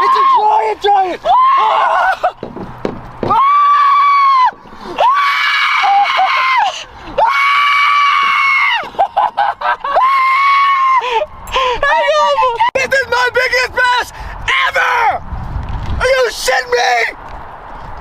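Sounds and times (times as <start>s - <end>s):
person screaming in excitement: 0.0s - 2.4s, 3.3s - 8.9s.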